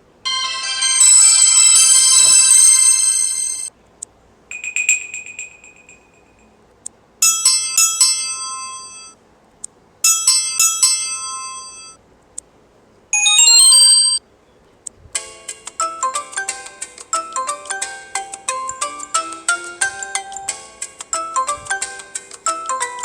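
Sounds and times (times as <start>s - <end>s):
bell-like ringtone figure: 0.3s - 3.7s, 13.2s - 14.2s
ringtone chime: 0.3s - 3.7s, 10.1s - 12.0s, 13.2s - 14.2s
rising run of notes: 0.3s - 3.7s.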